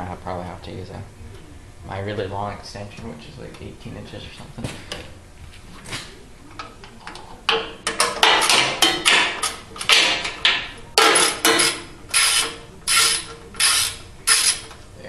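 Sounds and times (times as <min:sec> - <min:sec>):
socket ratchet wrench ratcheting: 0:11.2 - 0:14.6.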